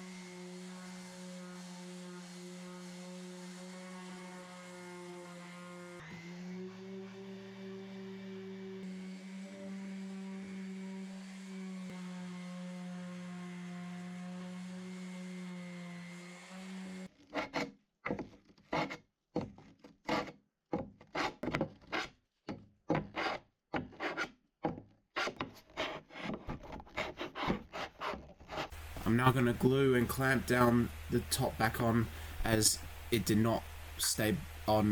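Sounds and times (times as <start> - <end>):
hand sanding wood: 0.0 - 17.7, 21.1 - 22.1, 23.0 - 23.4, 24.0 - 24.3, 25.2 - 33.6
electric hum: 28.8 - 34.9.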